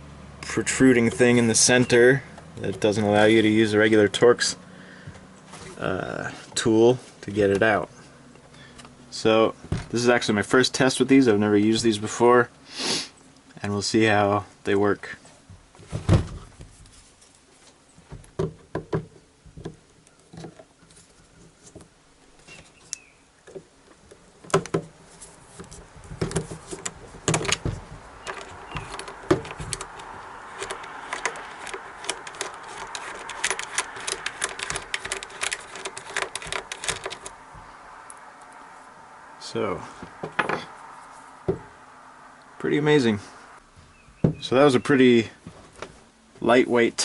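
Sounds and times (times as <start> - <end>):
rapid clicking and scraping: 23.5 - 38.2.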